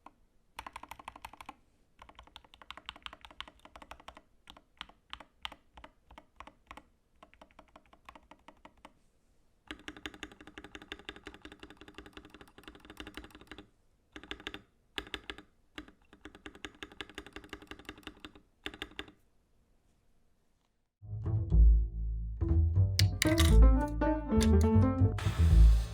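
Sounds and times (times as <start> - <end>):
typing on mechanical keyboard: 0.0 - 9.0, 9.7 - 19.2.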